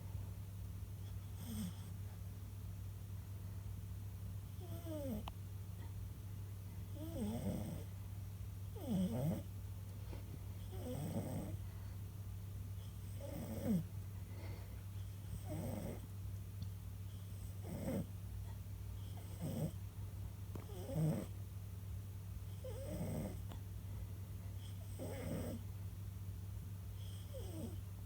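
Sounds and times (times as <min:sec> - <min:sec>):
steady low hum: 0:00.0 - 0:28.0
cat snoring: 0:01.4 - 0:01.9, 0:04.6 - 0:05.3, 0:07.0 - 0:07.9, 0:08.8 - 0:09.5, 0:10.7 - 0:11.6, 0:13.0 - 0:13.9, 0:15.3 - 0:16.0, 0:17.3 - 0:18.1, 0:19.0 - 0:19.8, 0:20.6 - 0:21.3, 0:22.6 - 0:23.4, 0:24.6 - 0:25.6, 0:27.0 - 0:27.8.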